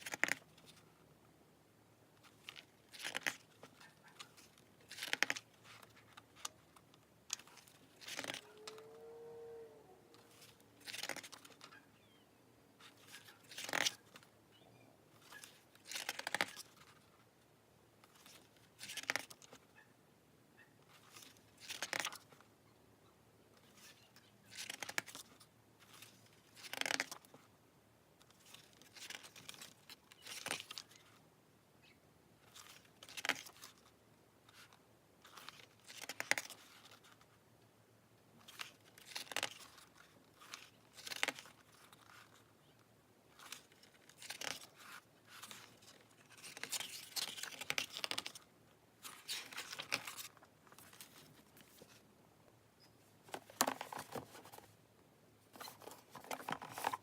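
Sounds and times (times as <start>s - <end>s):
packaging rustling and tearing: 55.6s - 57.0s.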